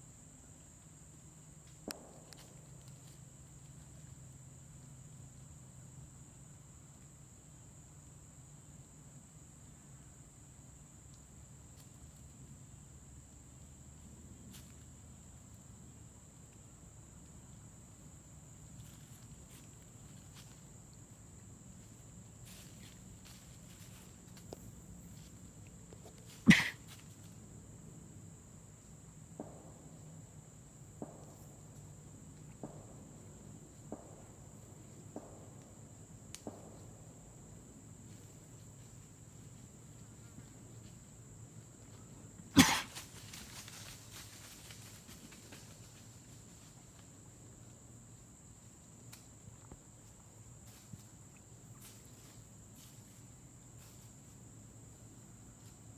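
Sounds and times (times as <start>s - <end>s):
high insect drone: 0.0s - 55.9s
person coughing: 26.5s - 26.8s, 42.6s - 42.9s.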